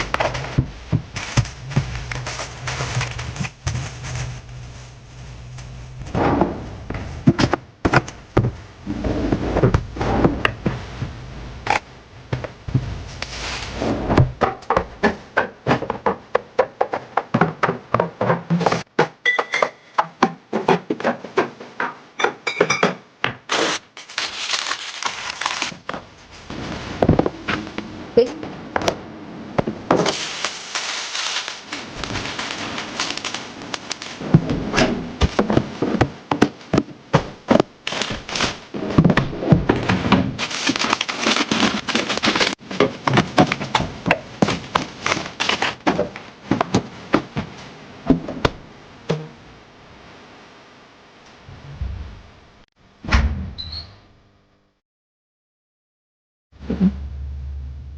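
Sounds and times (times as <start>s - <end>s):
rustling packaging: 0.0s - 5.9s, 23.5s - 27.6s, 29.9s - 34.6s, 35.2s - 46.8s
knocks and taps of groceries: 14.2s - 19.4s, 35.2s - 41.1s.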